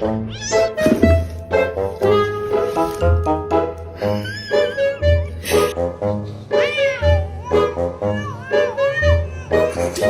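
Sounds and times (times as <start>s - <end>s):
cat meowing: 0.3s - 0.8s, 6.6s - 9.7s.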